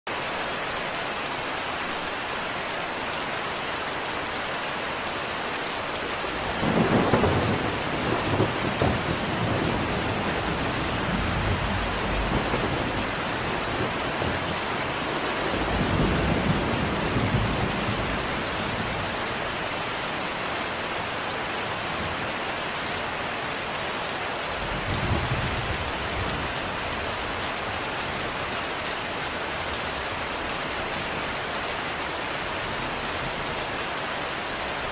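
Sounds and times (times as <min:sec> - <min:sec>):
steady rain: 0:00.1 - 0:34.9
thunder rumbling: 0:06.4 - 0:19.6.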